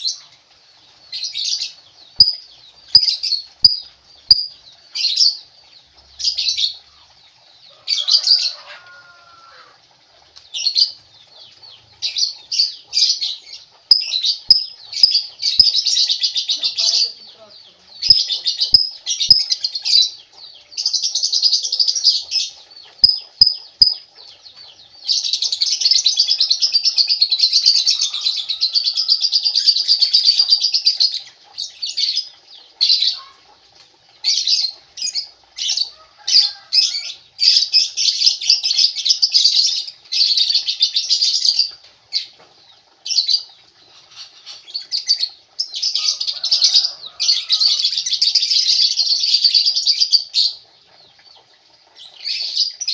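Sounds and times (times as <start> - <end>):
lovebird chattering: 2.2 - 4.5, 13.9 - 17.2, 18.0 - 19.7, 23.0 - 24.0.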